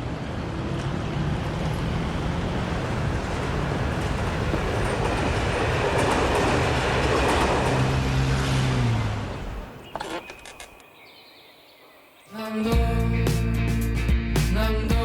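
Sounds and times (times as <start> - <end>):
rumbling vehicle hum: 0.0 - 10.8.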